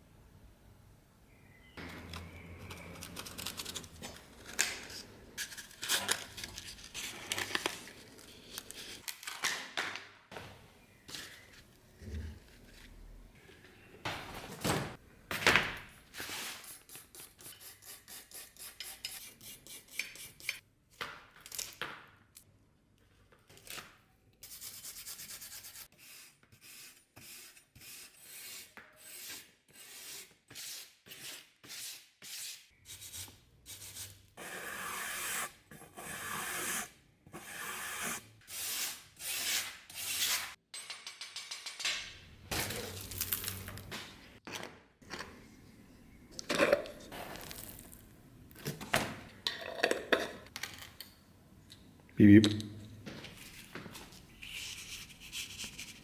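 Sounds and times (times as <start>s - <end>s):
metal knocks and clinks: 40.7s - 42.3s.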